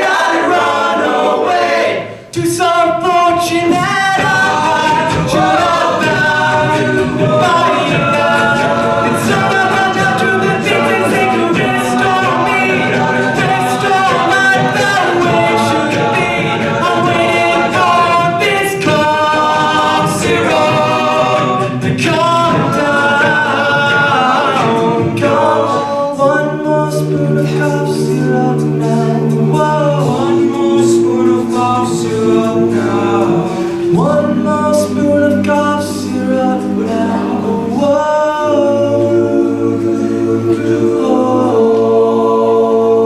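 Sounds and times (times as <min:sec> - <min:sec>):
men's a cappella group singing: 0:00.0 - 0:43.0.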